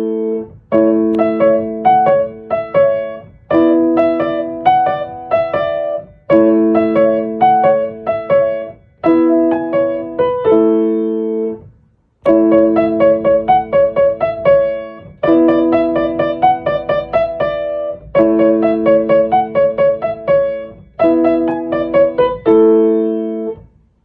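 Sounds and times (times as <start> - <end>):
light piano tune: 0.0 - 24.0.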